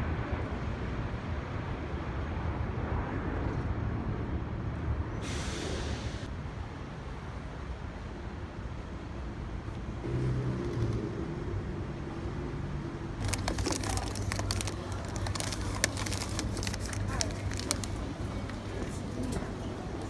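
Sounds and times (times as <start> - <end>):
hiss: 5.2 - 6.3
vehicle engine rumbling: 13.0 - 20.0.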